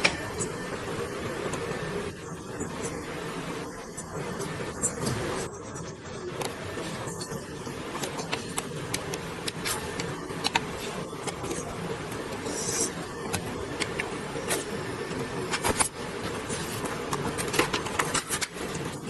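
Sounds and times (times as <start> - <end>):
welding machine hum: 0.0 - 19.0.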